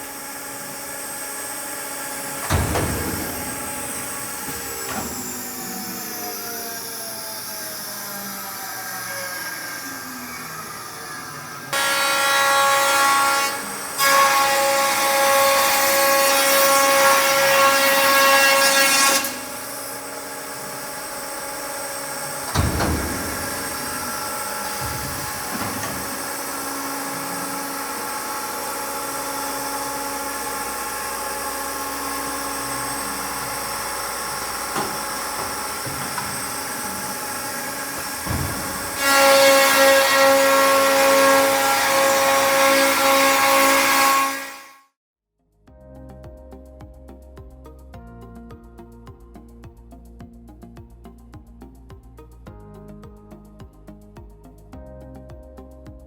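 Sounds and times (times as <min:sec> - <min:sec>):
router high-pitched whine: 0:00.0 - 0:12.2, 0:19.2 - 0:43.1
knock: 0:24.6 - 0:26.2, 0:38.0 - 0:39.0.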